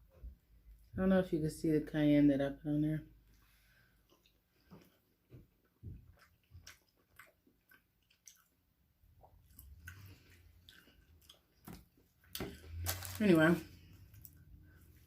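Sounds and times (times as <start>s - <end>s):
close-up chewing sounds: 3.3s - 15.0s.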